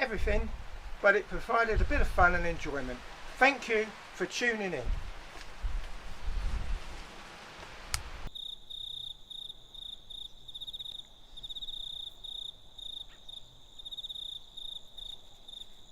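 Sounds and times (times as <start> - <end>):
crickets chirping: 8.3 - 15.9.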